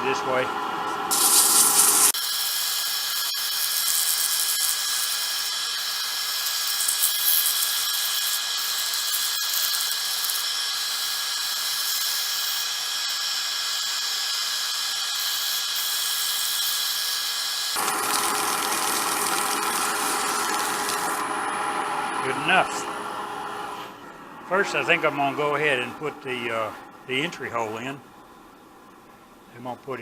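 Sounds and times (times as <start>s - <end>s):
wood lathe whining: 0.9s - 26.9s
sandpaper hissing on wood: 1.1s - 17.8s.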